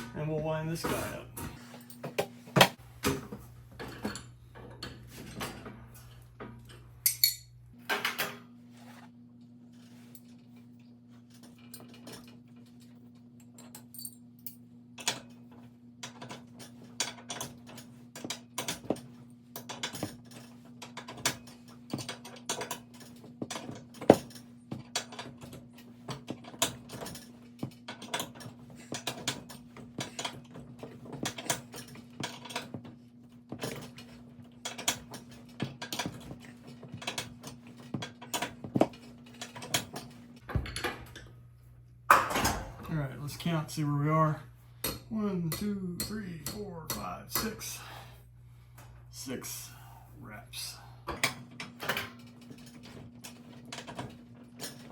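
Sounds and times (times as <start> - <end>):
steel bars clinking in spring: 6.6 - 7.6
steady low hum: 26.8 - 53.4.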